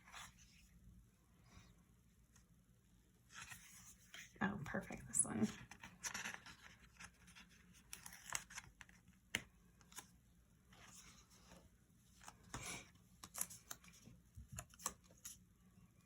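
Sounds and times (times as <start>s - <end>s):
soft paper rustles: 3.2s - 16.0s
small clicks of paper handling: 5.7s - 10.2s, 10.8s - 15.4s.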